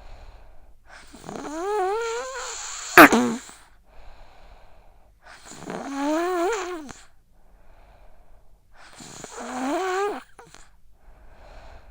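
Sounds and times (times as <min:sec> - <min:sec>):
child snoring: 0:01.0 - 0:03.6, 0:05.3 - 0:07.0, 0:08.9 - 0:10.7
soft breaths: 0:06.8 - 0:11.9.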